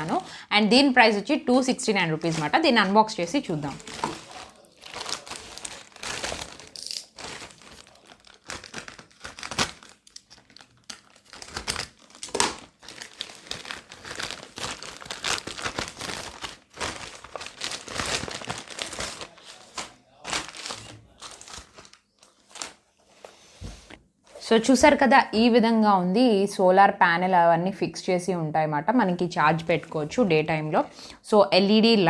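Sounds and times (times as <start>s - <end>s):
packaging crinkling and rustling: 3.6s - 23.2s.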